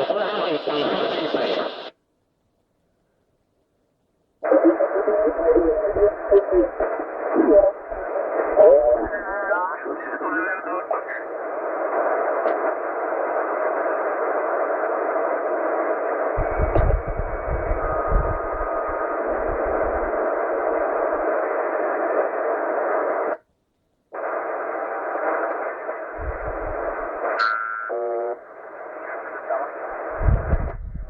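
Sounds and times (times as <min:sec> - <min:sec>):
shortwave radio static hiss: 0:00.0 - 0:02.0, 0:04.4 - 0:23.4, 0:24.1 - 0:31.0
low thumps: 0:16.4 - 0:20.2, 0:26.2 - 0:27.1.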